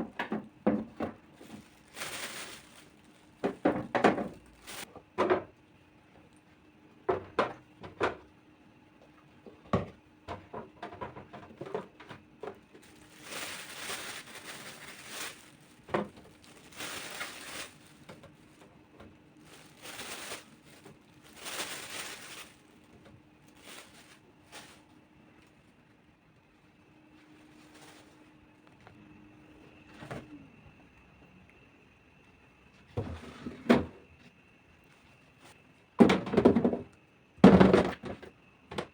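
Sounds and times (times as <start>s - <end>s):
faint steady hum: 0.0s - 38.9s
containers set down knocking: 36.0s - 38.9s.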